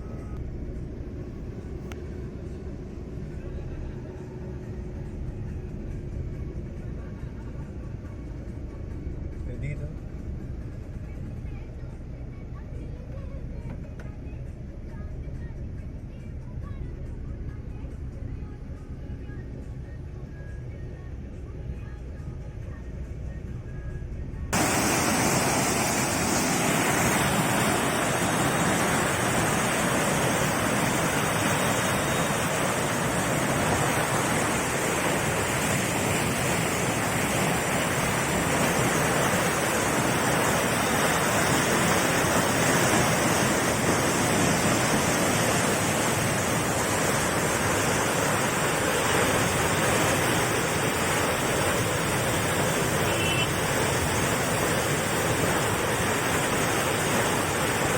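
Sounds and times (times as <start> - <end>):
rushing water: 24.6 - 57.9.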